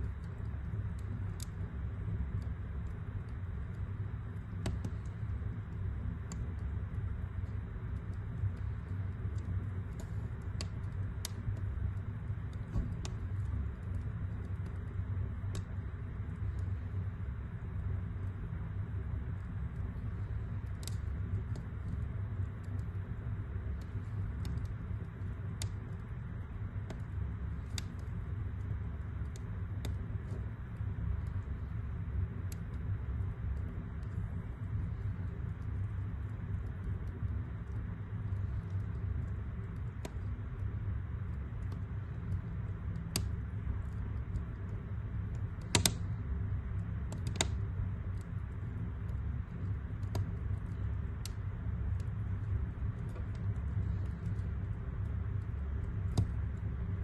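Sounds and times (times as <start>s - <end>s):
fire crackling and popping: 0.0s - 57.0s
fire rumbling: 0.0s - 57.0s
sharp fire pops: 9.9s - 14.8s, 45.5s - 46.3s.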